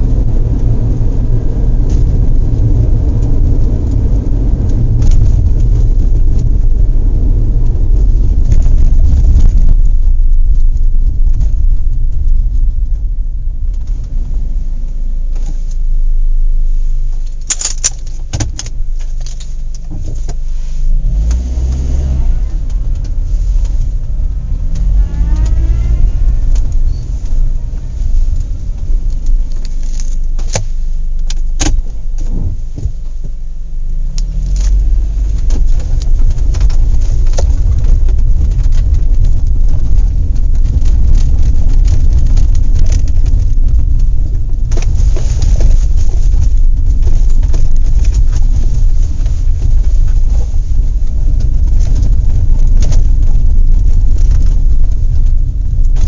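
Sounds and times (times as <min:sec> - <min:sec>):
engine rumbling: 0:00.0 - 0:56.0.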